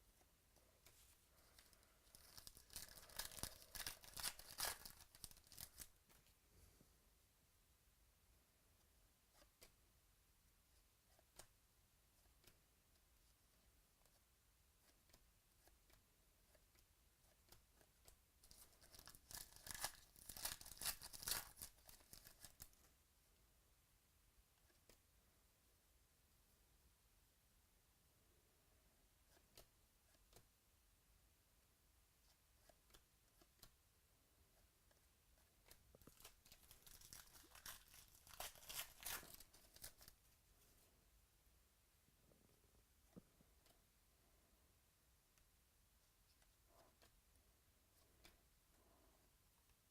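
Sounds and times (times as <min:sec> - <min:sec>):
cards being handled: 0:00.8 - 0:06.2, 0:35.6 - 0:40.2
wrapper tearing and crinkling: 0:02.1 - 0:05.9, 0:18.8 - 0:22.7, 0:36.1 - 0:40.1.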